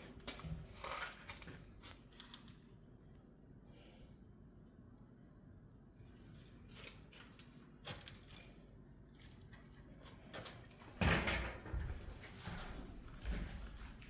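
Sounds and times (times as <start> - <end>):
small clinks and rattles: 6.0 - 14.0.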